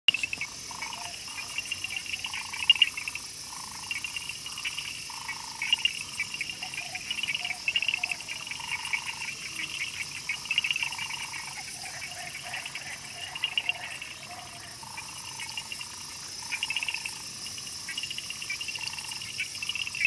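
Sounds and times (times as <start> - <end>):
fast pulsing trills: 0.1 - 14.2
frogs calling: 0.1 - 20.0
high insect hum: 0.1 - 20.0.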